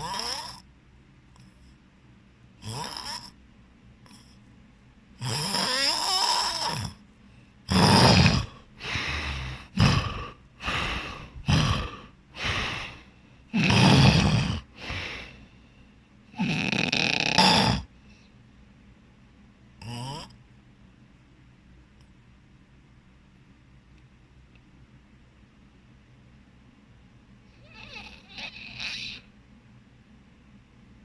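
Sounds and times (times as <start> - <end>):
person snoring heavily: 0.0 - 0.6, 2.6 - 3.4, 5.2 - 7.0, 7.7 - 15.4, 16.4 - 17.9, 19.8 - 20.3, 27.6 - 29.2.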